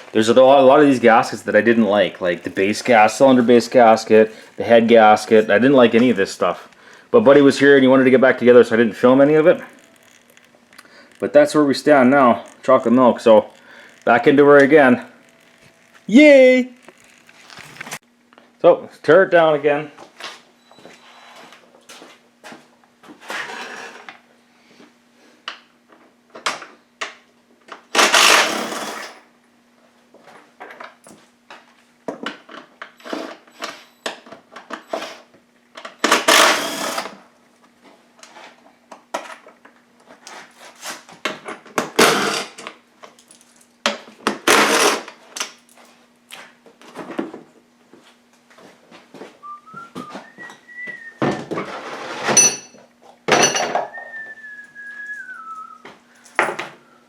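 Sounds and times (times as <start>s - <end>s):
faint steady hum: 0.0s - 23.1s
person whistling a tune: 49.4s - 51.5s, 53.9s - 56.2s
hand tools clinking on engine: 52.4s - 54.0s.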